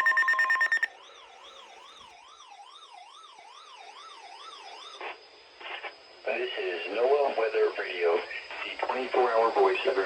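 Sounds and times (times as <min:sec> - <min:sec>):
warbling siren-like tone: 0:00.0 - 0:05.4.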